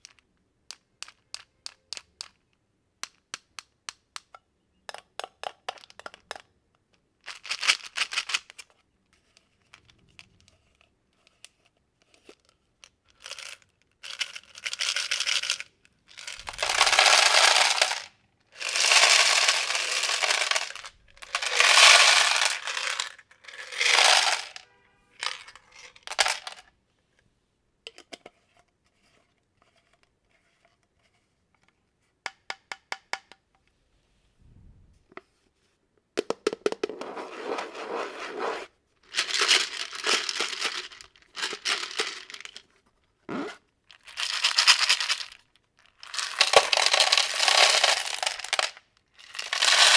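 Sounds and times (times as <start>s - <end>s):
hard candies clattering into plastic tub: 14.2s - 24.6s, 25.2s - 26.7s, 39.1s - 42.6s, 44.0s - 49.9s.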